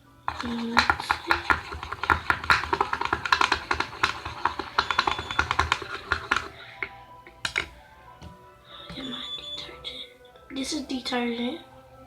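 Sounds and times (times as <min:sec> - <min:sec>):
rapid irregular clicking and tapping: 0:00.3 - 0:07.8.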